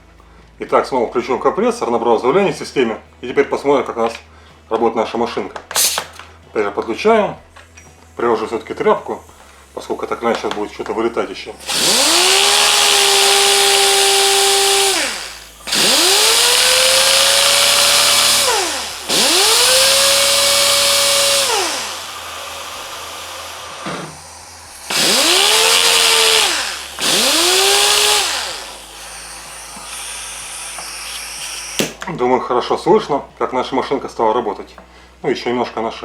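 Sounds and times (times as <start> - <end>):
pneumatic sander whining: 5.7 - 6.3, 7.7 - 32.1
hiss of exhaust air: 8.4 - 32.0.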